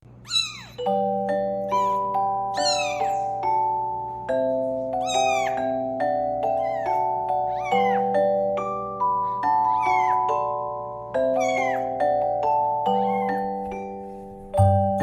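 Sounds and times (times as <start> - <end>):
kitten meowing: 0.2 - 0.8, 1.6 - 3.3, 5.0 - 5.8, 6.5 - 8.1, 9.6 - 10.4, 11.4 - 11.9, 13.0 - 13.4
music of ringing notes: 0.6 - 15.0.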